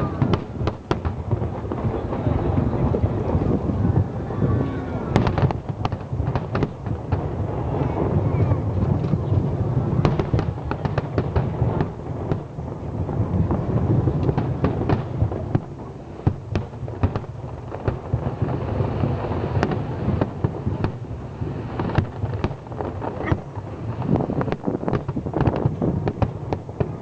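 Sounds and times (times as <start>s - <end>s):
fireworks bangs and crackles: 0.0s - 27.0s.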